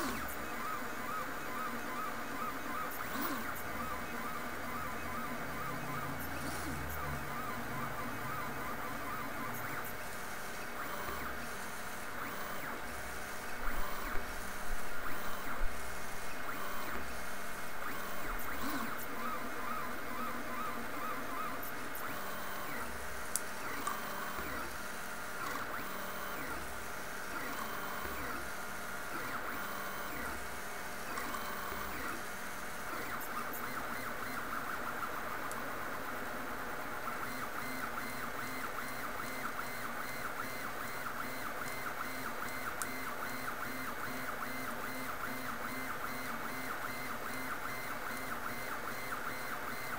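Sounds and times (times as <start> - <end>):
stepper motors whining: 0.0 - 10.0, 17.8 - 24.7
printer motors buzzing and whining: 0.0 - 49.9.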